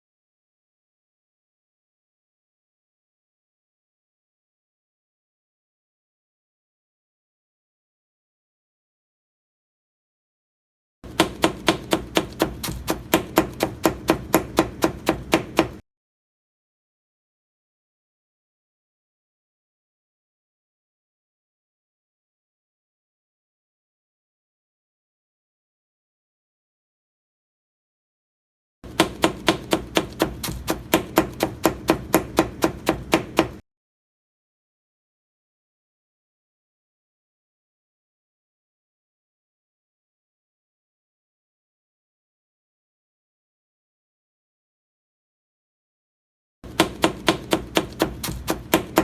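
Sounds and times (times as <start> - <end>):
knife chopping cabbage: 11.1 - 15.8, 28.9 - 33.6, 46.7 - 49.0.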